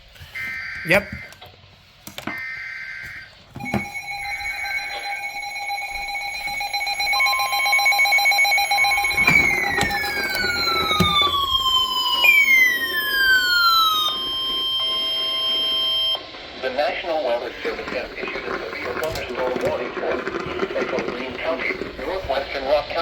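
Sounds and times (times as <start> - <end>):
data screech: 0.4 - 1.4, 2.4 - 22.4
falling electronic tones: 2.5 - 16.3
steady electronic alert tone: 3.6 - 16.2.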